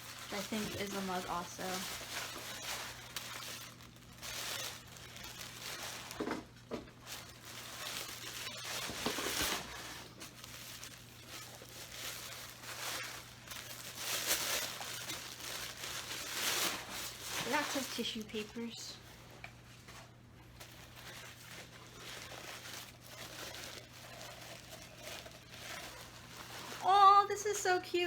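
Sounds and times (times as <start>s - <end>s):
tissue paper crinkling: 0.0s - 28.0s.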